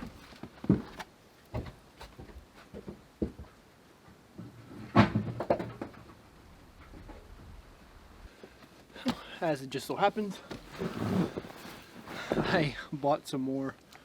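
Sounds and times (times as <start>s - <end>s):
objects knocking and clunking: 4.4s - 6.2s, 9.0s - 9.4s.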